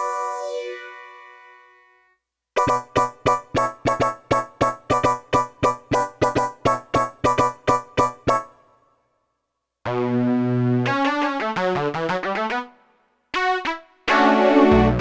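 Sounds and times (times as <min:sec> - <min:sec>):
synthesizer chords: 0:02.6 - 0:08.6, 0:14.1 - 0:15.0
synthesizer staccato notes: 0:02.6 - 0:08.6.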